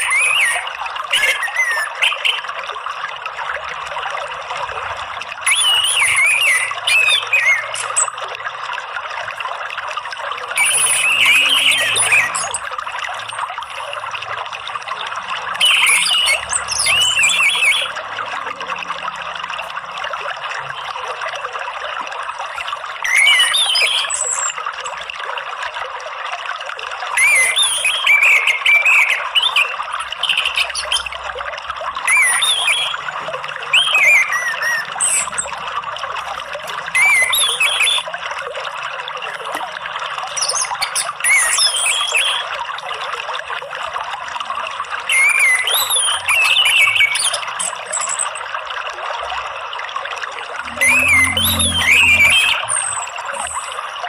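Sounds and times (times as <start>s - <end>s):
running water trickling: 0.0s - 54.0s
thrush singing: 50.6s - 53.6s.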